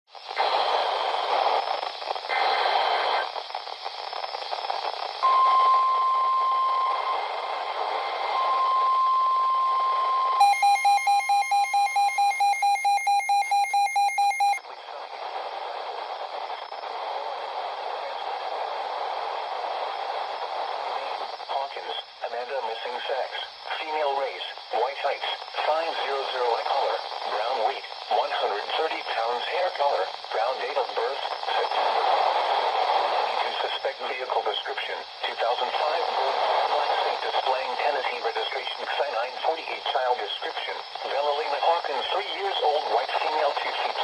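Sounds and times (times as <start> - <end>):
radio static and hiss: 0.2 - 5.2, 13.9 - 44.0
rapid pulsing beeps: 10.4 - 14.6
steady alert tone: 10.4 - 14.6.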